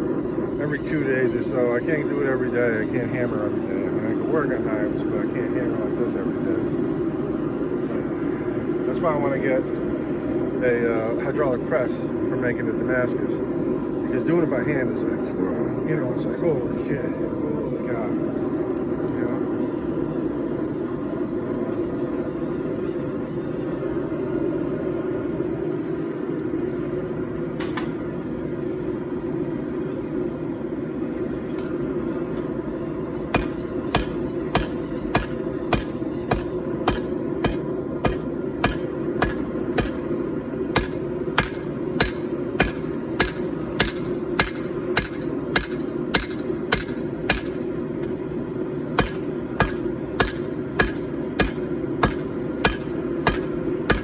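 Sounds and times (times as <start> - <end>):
hammer striking hot steel on anvil: 31.5 - 48.2, 49.0 - 54.0.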